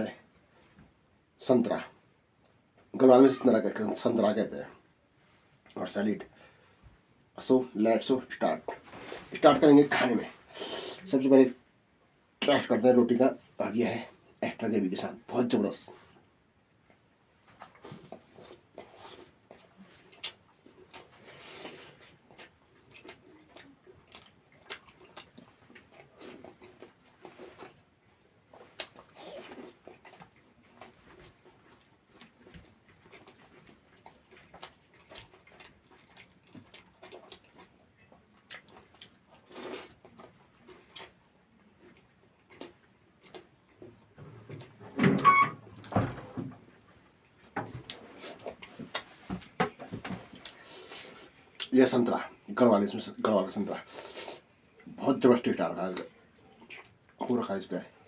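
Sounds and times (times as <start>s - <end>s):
person chewing with wet mouth sounds: 16.1s - 44.8s, 46.7s - 49.6s, 50.2s - 51.7s, 55.9s - 57.2s.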